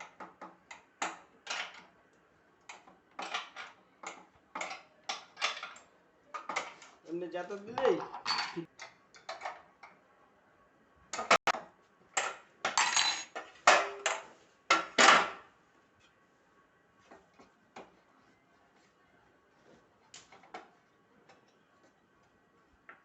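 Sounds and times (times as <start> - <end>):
parts clattering and knocking: 0.0 - 1.9, 2.7 - 7.0, 7.7 - 9.7, 11.1 - 15.5.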